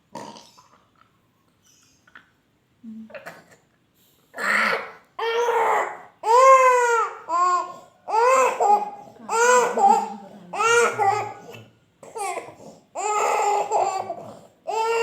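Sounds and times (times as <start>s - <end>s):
baby crying: 4.4s - 15.0s.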